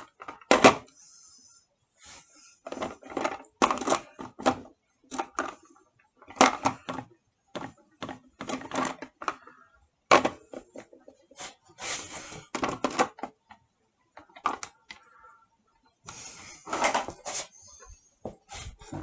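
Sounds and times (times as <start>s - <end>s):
clicks and knocks of handling: 12.5s - 15.1s.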